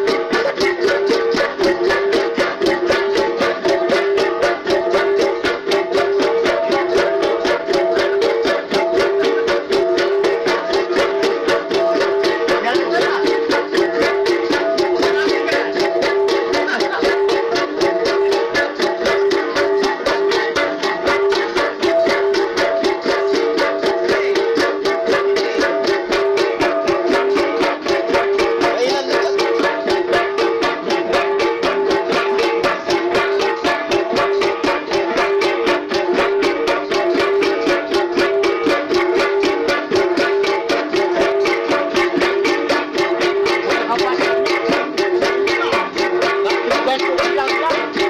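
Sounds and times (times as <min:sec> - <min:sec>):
flat gong ensemble playing: 0:00.0 - 0:48.0.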